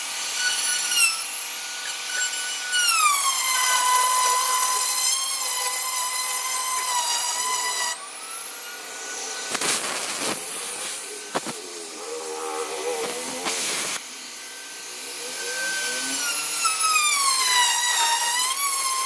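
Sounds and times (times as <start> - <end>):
power tool motor whining: 0.0 - 19.0
short rasping bursts: 0.5 - 14.1.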